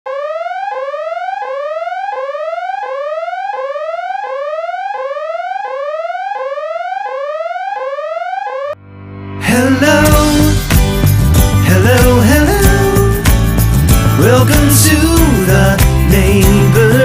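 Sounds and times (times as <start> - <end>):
car alarm siren whooping: 0.1 - 8.8.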